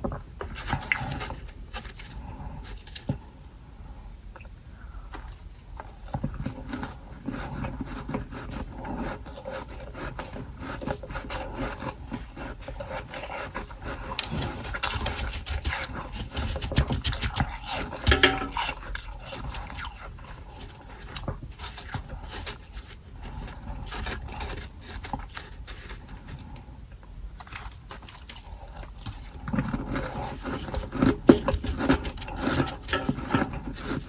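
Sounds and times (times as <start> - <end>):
chewing frost crunches: 27.3 - 34.0.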